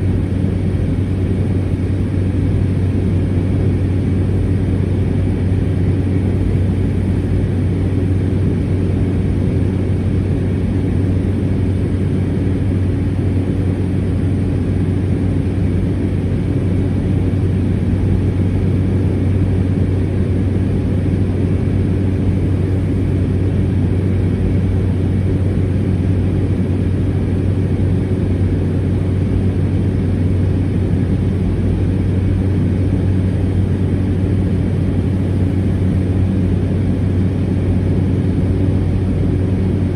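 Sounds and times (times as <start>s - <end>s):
turboprop engine droning: 0.0s - 39.9s.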